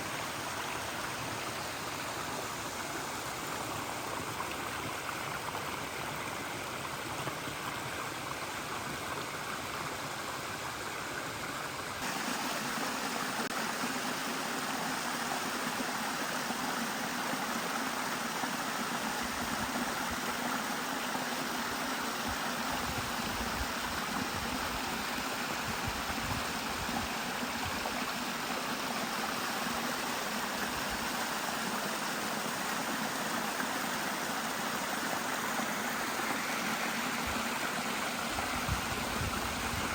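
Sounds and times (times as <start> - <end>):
mountain stream rushing: 0.0 - 39.9.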